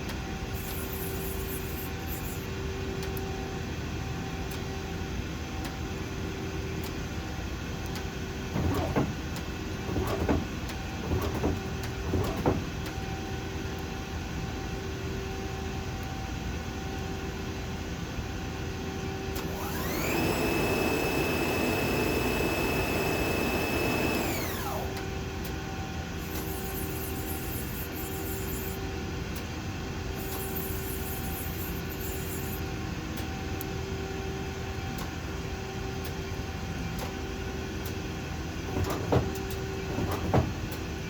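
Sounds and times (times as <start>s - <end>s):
lathe spindle whine: 0.6s - 2.5s, 19.4s - 25.0s, 26.1s - 28.9s, 30.1s - 32.7s
machine hum: 0.6s - 2.5s, 19.4s - 25.2s, 26.1s - 28.9s, 30.0s - 32.8s.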